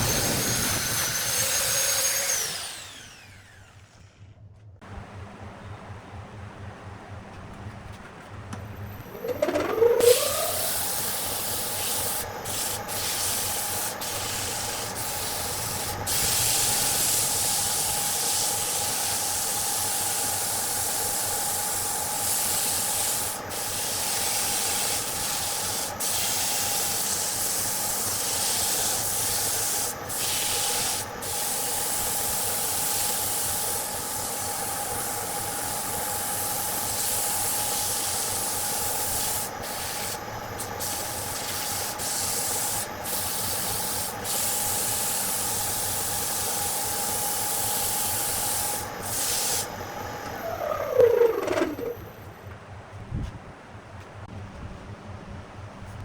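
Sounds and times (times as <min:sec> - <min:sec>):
power sander on wood: 0:00.0 - 0:04.1, 0:09.1 - 0:49.7.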